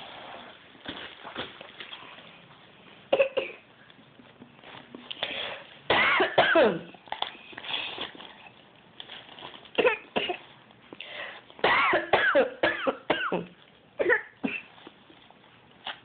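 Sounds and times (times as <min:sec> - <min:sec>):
woman coughing: 0:05.9 - 0:06.9, 0:11.6 - 0:14.7.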